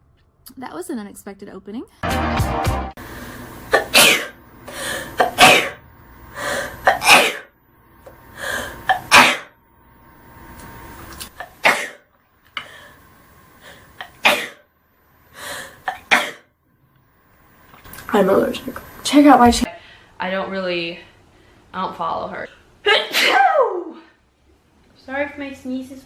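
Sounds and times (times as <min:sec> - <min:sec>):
woman sneezing: 0:03.7 - 0:04.4, 0:05.2 - 0:05.8, 0:06.8 - 0:07.5, 0:08.9 - 0:09.5, 0:22.8 - 0:24.1.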